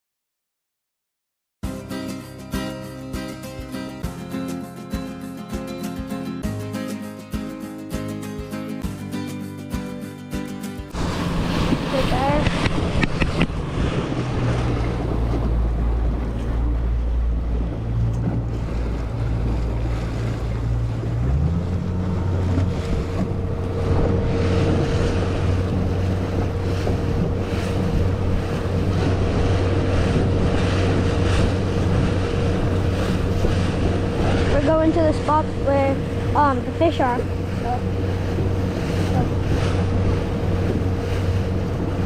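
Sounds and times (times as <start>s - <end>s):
motorboat engine running: 10.8s - 42.0s
water rushing past: 10.9s - 42.0s
wind buffeting microphone: 10.9s - 42.0s.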